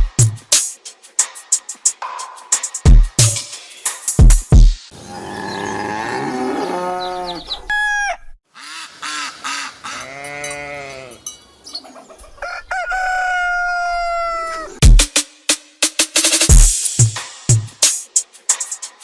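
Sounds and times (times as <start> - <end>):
rooster crowing: 12.2 - 14.8.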